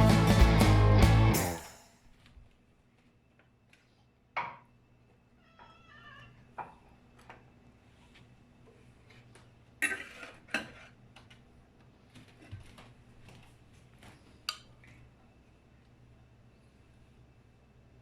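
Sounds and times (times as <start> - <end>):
dishes clattering: 9.8 - 11.0.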